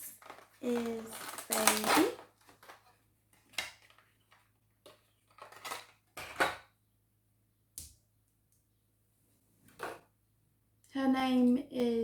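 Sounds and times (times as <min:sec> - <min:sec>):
packaging rustling: 0:00.0 - 0:06.0.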